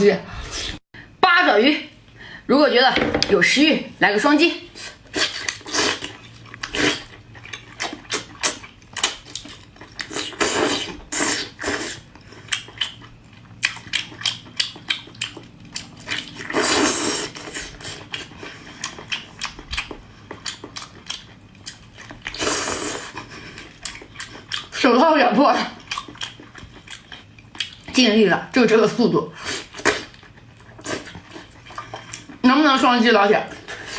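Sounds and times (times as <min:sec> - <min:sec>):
person chewing with mouth smacks: 0:04.8 - 0:24.8, 0:25.7 - 0:28.0.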